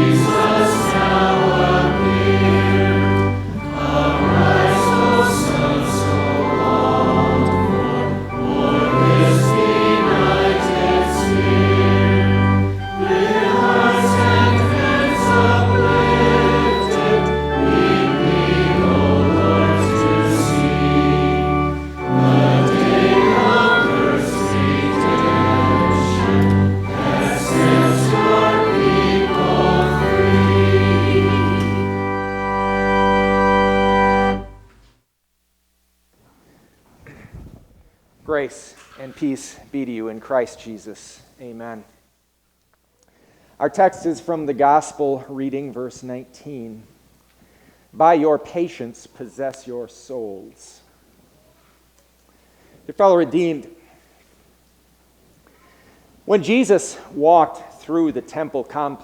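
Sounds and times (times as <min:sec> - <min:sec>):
choir singing a hymn: 0:00.0 - 0:34.6
organ accompaniment: 0:00.0 - 0:34.9.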